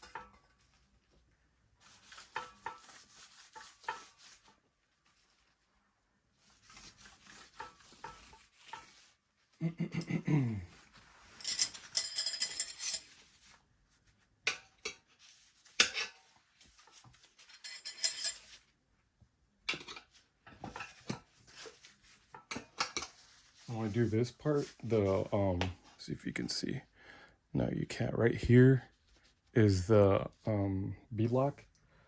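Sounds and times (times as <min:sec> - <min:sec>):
bright metal scrape: 0:15.7 - 0:18.6.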